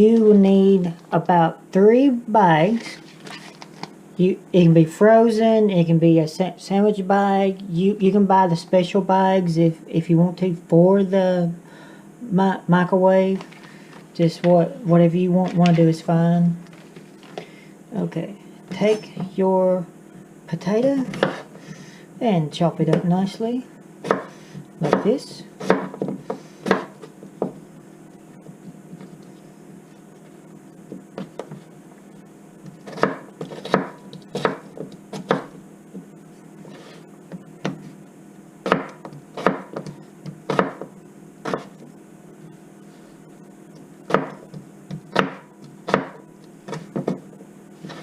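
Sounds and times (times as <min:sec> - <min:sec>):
faint steady hum: 0:00.0 - 0:48.0
knife chopping on cutting board: 0:21.1 - 0:21.5, 0:24.0 - 0:27.6, 0:32.7 - 0:35.6, 0:38.6 - 0:41.8, 0:44.1 - 0:47.3.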